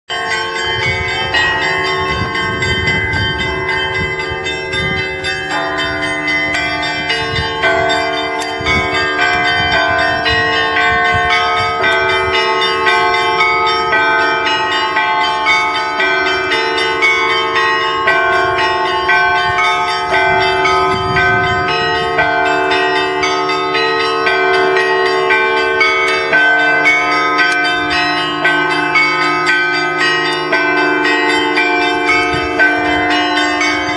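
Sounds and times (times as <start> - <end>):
church bells pealing: 0.1 - 33.9.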